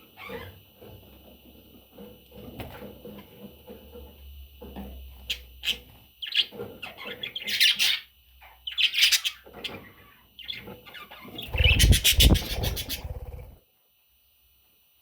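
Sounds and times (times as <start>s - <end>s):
budgerigar chicks chirping: 5.3s - 13.5s.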